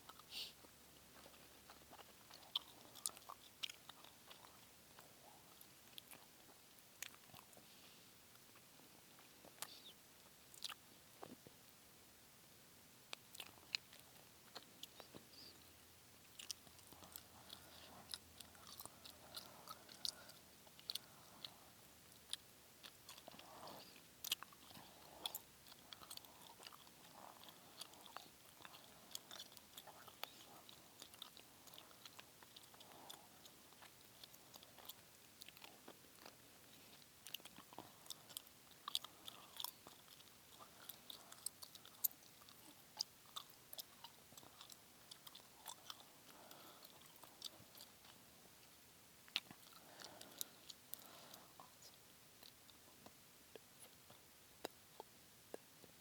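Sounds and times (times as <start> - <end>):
gum chewing mouth clicks: 0.0 - 7.6, 10.5 - 11.5, 13.1 - 56.0
breathy mouth sounds: 13.1 - 56.0.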